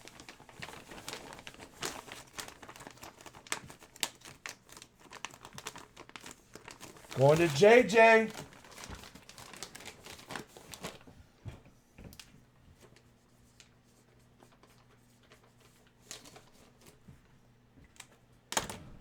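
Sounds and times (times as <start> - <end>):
plastic packaging crinkling: 0.7 - 7.1.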